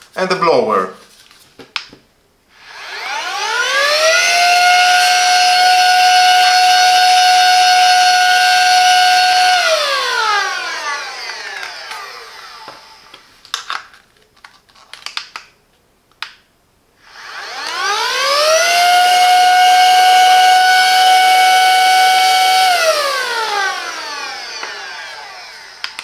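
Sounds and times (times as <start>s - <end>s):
handheld vacuum motor whine: 2.5s - 13.5s, 17.0s - 26.0s.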